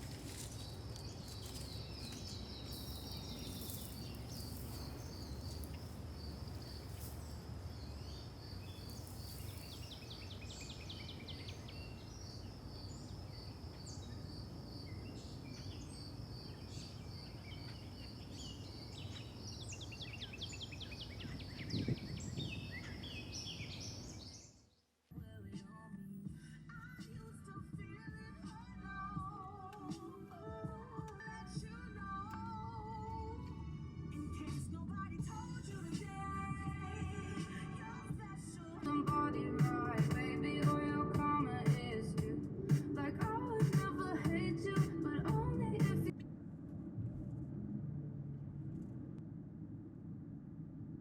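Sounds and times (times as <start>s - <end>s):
insect-like high chirp: 0.0s - 24.4s
bird chirps: 0.0s - 24.8s
low steady rumble: 31.0s - 51.0s.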